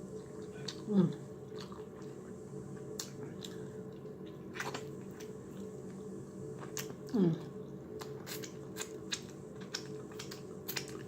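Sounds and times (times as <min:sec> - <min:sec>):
low hum: 0:00.0 - 0:11.0
wet chewing and lip-smacking: 0:01.5 - 0:05.7, 0:07.9 - 0:11.0.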